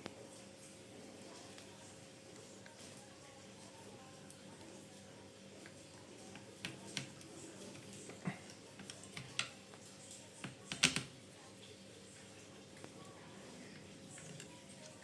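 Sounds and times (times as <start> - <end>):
plastic and metal parts clicking: 10.4 - 11.1.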